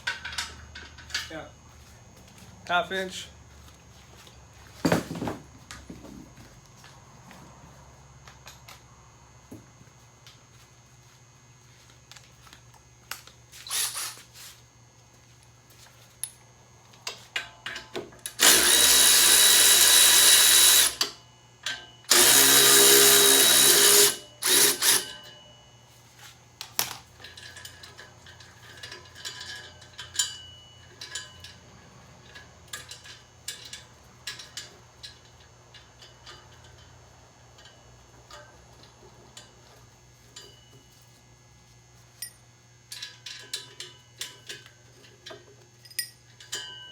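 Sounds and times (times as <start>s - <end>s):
power tool spinning bolts: 13.6s - 14.3s, 18.3s - 21.1s, 22.1s - 25.2s.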